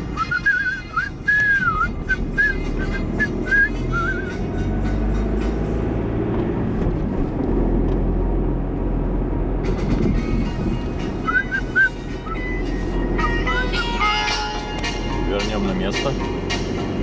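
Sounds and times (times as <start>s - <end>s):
man whistling a tune: 0.0s - 4.4s, 11.2s - 12.6s
car cabin drone: 0.0s - 17.0s.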